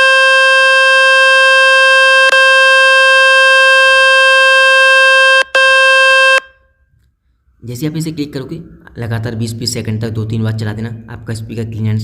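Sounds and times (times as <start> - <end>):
loud buzzing tone from phone: 0.0 - 6.6.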